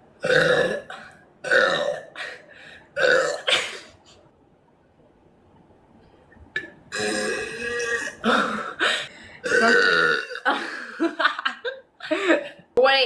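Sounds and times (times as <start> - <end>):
woman burping loudly: 0.2 - 2.4, 3.0 - 3.9, 6.6 - 11.0.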